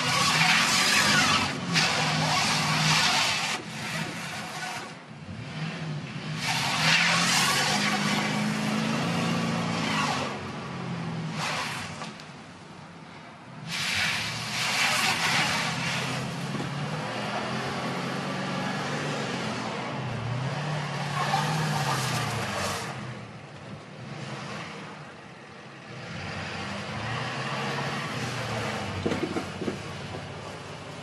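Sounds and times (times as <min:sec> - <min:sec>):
wheels spinning in snow: 0:00.0 - 0:05.0, 0:06.3 - 0:10.6, 0:11.3 - 0:12.3, 0:13.7 - 0:17.5, 0:21.0 - 0:23.2
van engine revving: 0:00.0 - 0:12.2, 0:13.5 - 0:31.0.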